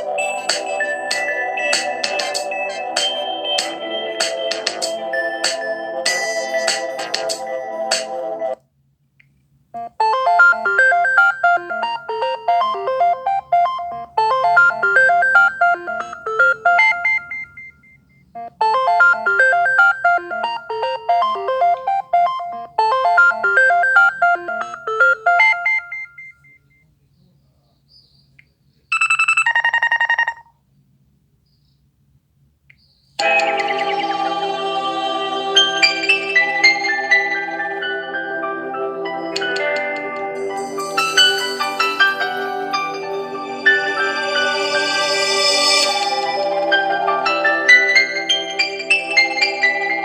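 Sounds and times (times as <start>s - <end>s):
bell-like electronic ringtone melody: 0.0s - 8.6s, 9.8s - 26.6s, 33.2s - 50.0s
two-note chime: 0.0s - 8.6s, 33.2s - 50.0s.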